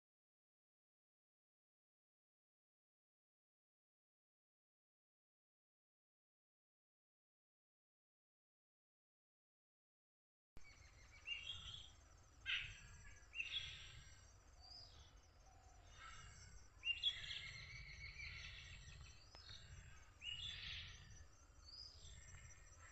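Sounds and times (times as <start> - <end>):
birds calling: 10.6 - 22.9.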